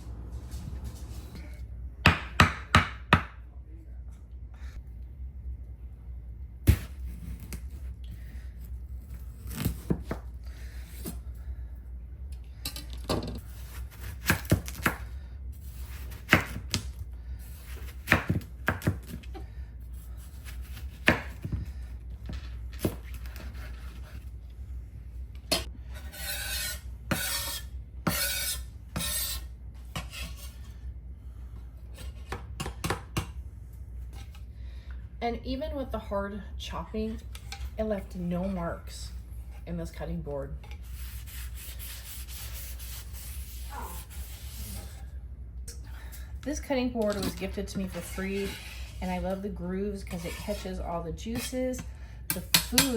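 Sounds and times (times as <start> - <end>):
steady low hum: 0.0 - 52.9
knife chopping on wooden board: 2.0 - 3.4, 15.9 - 16.9, 17.7 - 19.2, 32.3 - 33.3.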